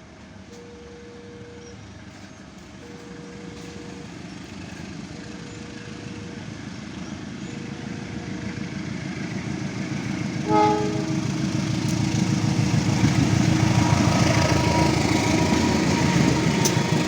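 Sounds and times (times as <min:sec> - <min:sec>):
train rumble: 0:00.0 - 0:17.0
train horn blast: 0:10.4 - 0:17.0.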